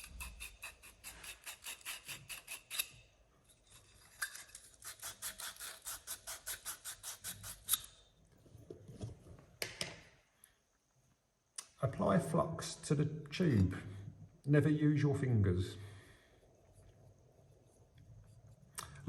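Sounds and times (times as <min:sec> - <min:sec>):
abrasive strip rubbing copper tube: 0:00.0 - 0:03.0.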